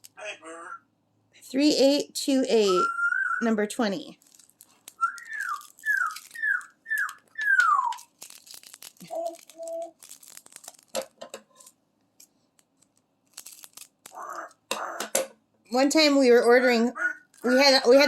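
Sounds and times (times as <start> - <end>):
parrot whistling: 2.8 - 3.5, 5.0 - 8.1
plastic bags rattling: 4.1 - 11.8, 12.7 - 14.2.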